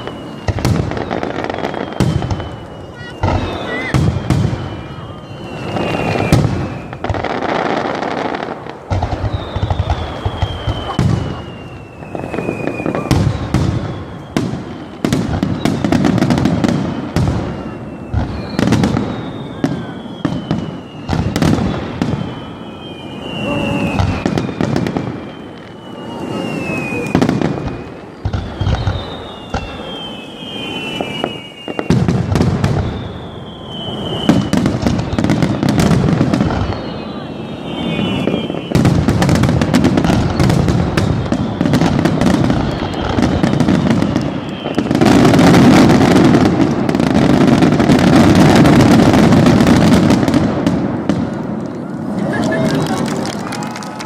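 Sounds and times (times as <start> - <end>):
whistle falling in pitch: 0.0 - 7.1, 9.2 - 14.5, 17.4 - 32.1, 32.7 - 35.8, 36.5 - 39.0, 40.1 - 45.4
fireworks booming: 0.0 - 54.0
fireworks crackling: 0.0 - 54.0.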